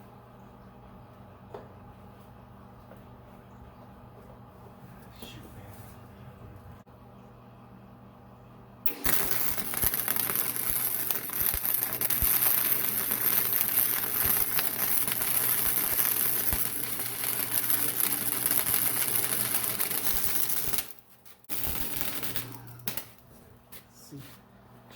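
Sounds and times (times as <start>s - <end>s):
low welder hum: 8.6s - 24.1s
welding arc crackle: 8.9s - 23.2s.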